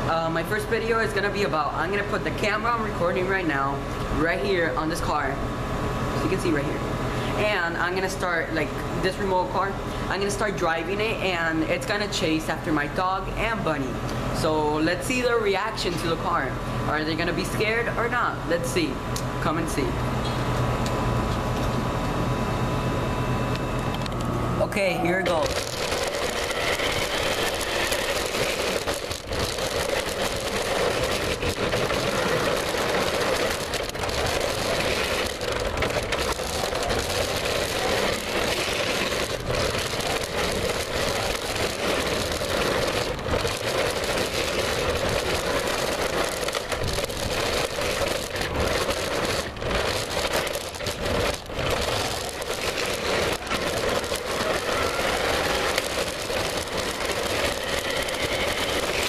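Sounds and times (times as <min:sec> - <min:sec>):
remote-control car motor: 0:25.3 - 0:59.0.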